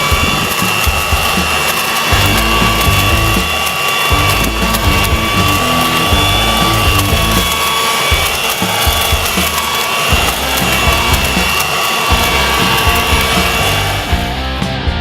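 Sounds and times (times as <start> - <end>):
garden blower vacuum running: 0.0 - 15.0
background music with bass line: 2.1 - 7.5, 10.2 - 15.0.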